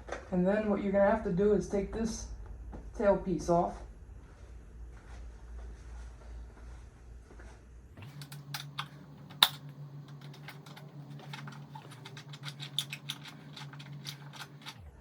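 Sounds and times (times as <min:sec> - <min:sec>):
faint steady hum: 0:08.0 - 0:15.0.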